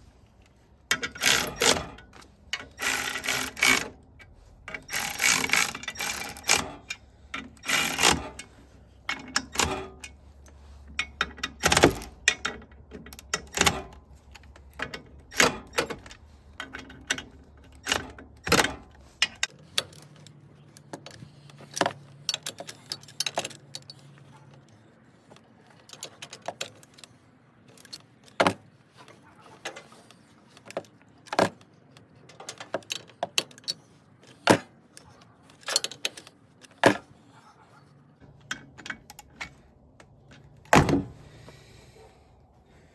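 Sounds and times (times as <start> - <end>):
metal tools clinking: 0.4 - 28.4.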